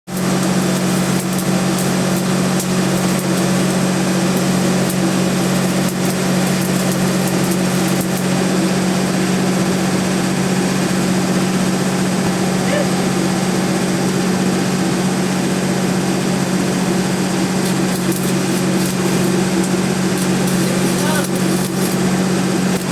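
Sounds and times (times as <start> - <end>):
small engine humming: 0.1 - 22.9
dense crackle: 0.2 - 8.2, 17.5 - 22.9.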